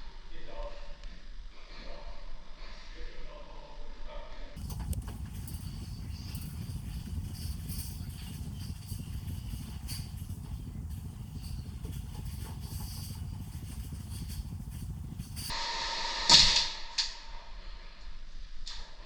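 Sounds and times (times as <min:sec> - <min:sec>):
low rumble: 0:04.6 - 0:15.6
sharp loud crack: 0:16.0 - 0:17.2.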